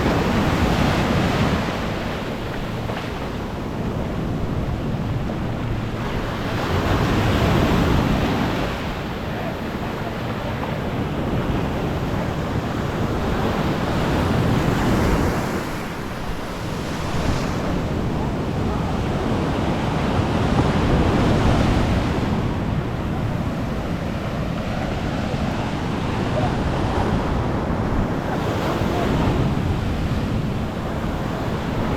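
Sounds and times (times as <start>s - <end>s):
surf breaking on a beach: 0.0s - 31.9s
wind buffeting microphone: 0.0s - 31.9s.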